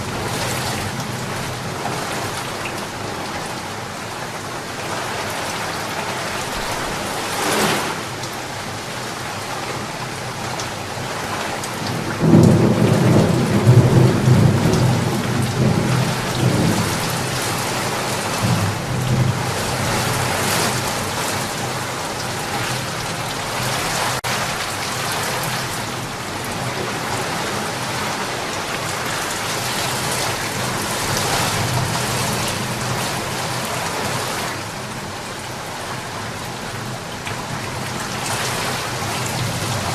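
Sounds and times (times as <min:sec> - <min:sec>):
heavy rain hissing: 0:00.0 - 0:11.0
thunderclap rumbling: 0:11.9 - 0:21.1.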